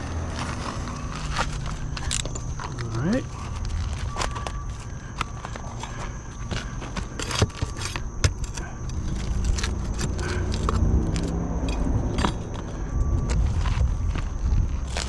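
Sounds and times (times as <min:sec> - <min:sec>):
low engine rumble: 0:00.0 - 0:07.2, 0:08.1 - 0:15.0
metal clinking and jingling: 0:00.8 - 0:04.9, 0:07.0 - 0:13.4.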